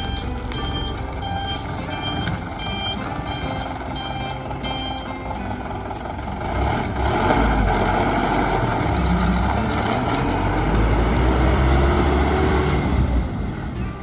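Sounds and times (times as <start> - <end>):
heavy bus engine rumbling: 0.0 - 14.0
road noise: 0.0 - 14.0.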